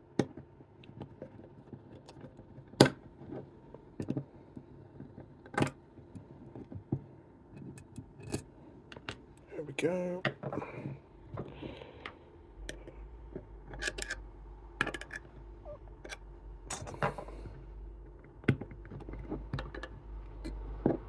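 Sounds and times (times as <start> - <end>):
metal lock parts clicking: 13.7 - 14.2, 14.8 - 15.3, 16.0 - 17.3.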